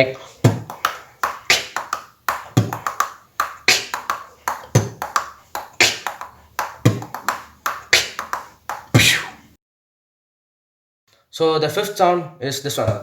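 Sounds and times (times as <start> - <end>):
beatboxed kick-drum bass: 3.6 - 4.1, 5.7 - 6.2, 9.0 - 9.4.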